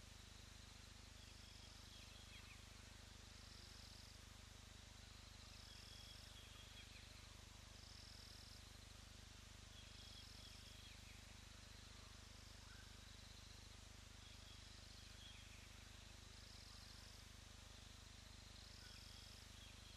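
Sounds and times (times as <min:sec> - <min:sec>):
low steady hiss: 0:00.0 - 0:19.9
insect trill: 0:05.1 - 0:08.8, 0:09.8 - 0:19.9.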